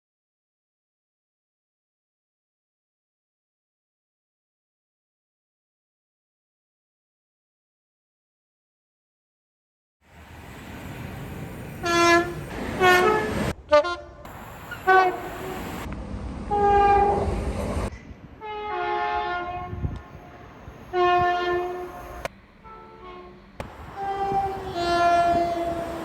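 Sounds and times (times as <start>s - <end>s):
low rumble of trains: 10.0s - 26.0s
train horn blasts: 11.8s - 15.9s, 16.5s - 17.3s, 18.4s - 26.0s.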